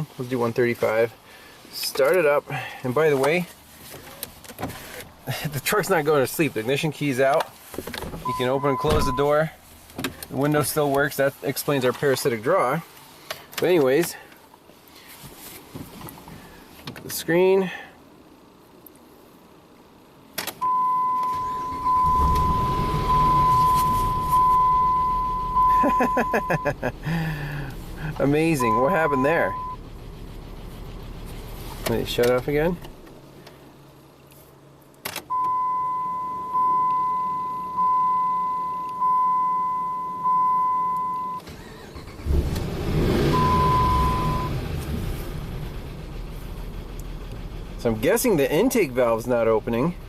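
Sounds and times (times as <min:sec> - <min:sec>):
steady high beep tone: 0:08.3 - 0:09.3, 0:20.6 - 0:26.8, 0:28.6 - 0:29.8, 0:35.3 - 0:41.4, 0:43.4 - 0:44.5
warning chime dinging: 0:08.3 - 0:09.3, 0:20.6 - 0:26.8, 0:28.6 - 0:29.8
engine cranking and running: 0:21.3 - 0:33.6, 0:41.4 - 0:50.0.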